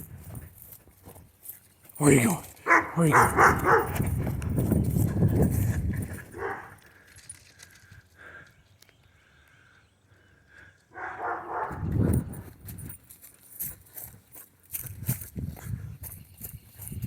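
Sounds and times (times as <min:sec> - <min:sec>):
dog vocalizing: 0:02.6 - 0:04.3.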